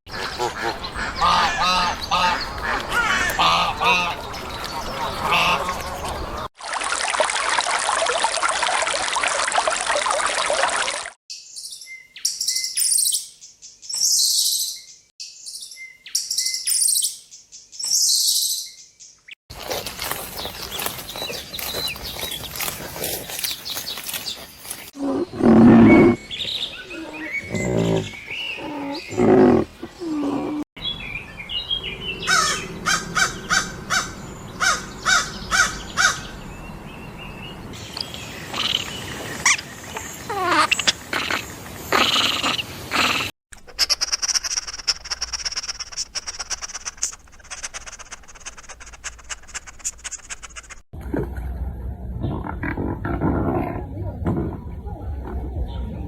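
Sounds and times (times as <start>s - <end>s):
bird chirps and clicks: 2.0s - 6.4s, 19.8s - 24.9s, 37.9s - 39.0s
low pitched animal calls: 31.8s - 36.3s
rapid repeated animal calls: 40.3s - 50.8s.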